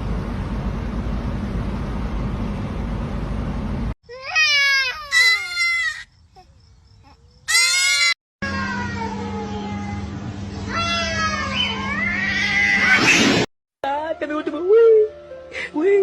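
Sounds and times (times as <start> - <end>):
high wailing cries: 4.1 - 13.0.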